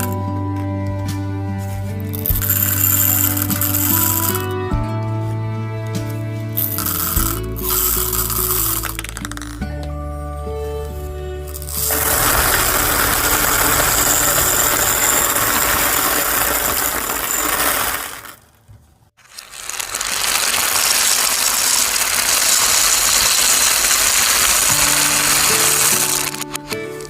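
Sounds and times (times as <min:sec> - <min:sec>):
small beads falling clatter: 0:02.1 - 0:04.5, 0:06.6 - 0:09.6, 0:11.5 - 0:18.4, 0:19.2 - 0:26.6.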